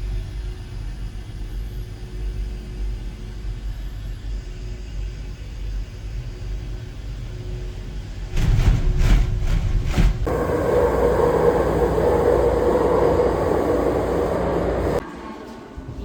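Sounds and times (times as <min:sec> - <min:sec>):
airliner cabin rumble: 0:08.1 - 0:15.0
faint steady hum: 0:10.3 - 0:15.0.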